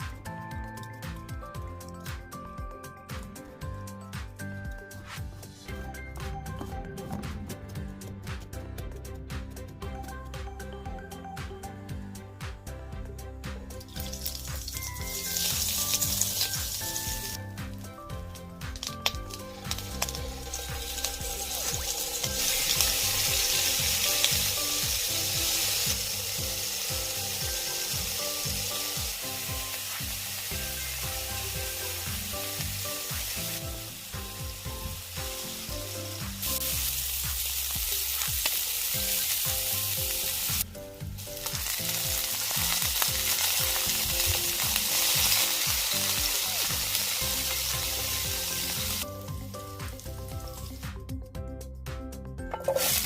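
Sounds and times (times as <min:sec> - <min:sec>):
food sizzling in hot oil: 0:13.7 - 0:51.0, 0:52.6 - 0:53.0.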